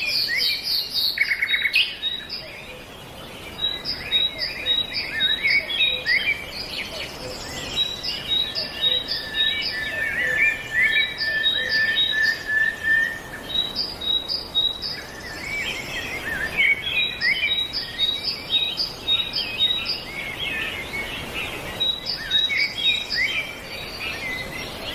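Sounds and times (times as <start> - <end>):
songbirds singing and chirping: 0.0 - 24.9.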